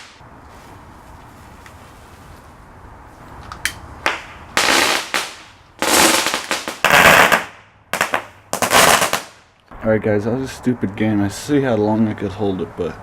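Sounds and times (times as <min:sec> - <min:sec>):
firecrackers cracking: 0:00.0 - 0:00.2, 0:04.0 - 0:09.5.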